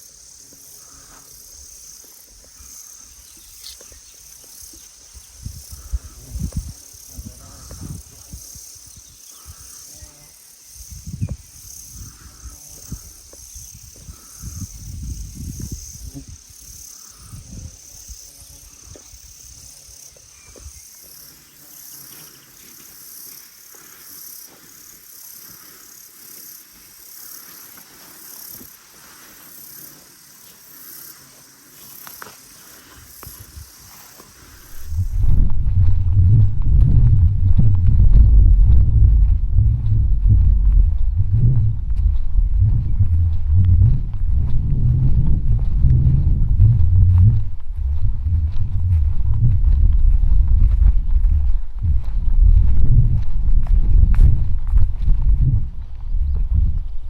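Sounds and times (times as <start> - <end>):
insects chirping: 0.0 - 57.0
low thuds and rustles: 34.8 - 57.0.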